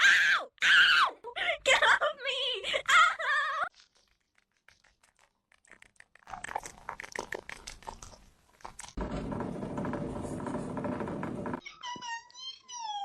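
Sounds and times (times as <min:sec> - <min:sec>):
animal chewing crunchy food: 0:03.7 - 0:09.0.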